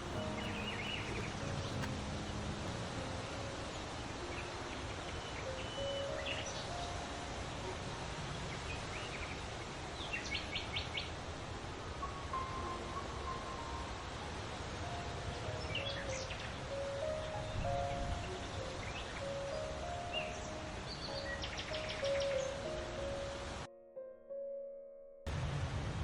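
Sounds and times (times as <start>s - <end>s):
wild birds calling and singing: 0.0s - 1.9s
steady background hiss: 0.0s - 23.7s.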